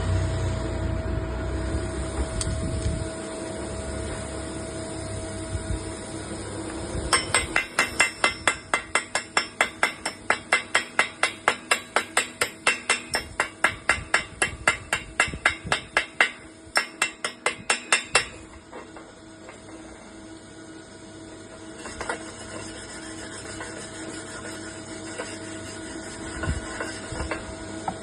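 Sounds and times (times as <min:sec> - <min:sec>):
machine hum: 0:00.0 - 0:28.0
hammer striking steel: 0:07.1 - 0:19.6.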